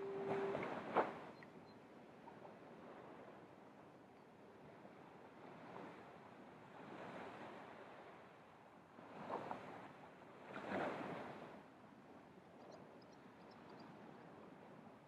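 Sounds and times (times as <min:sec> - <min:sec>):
small waves breaking on beach: 0:00.0 - 0:01.2, 0:04.6 - 0:11.6.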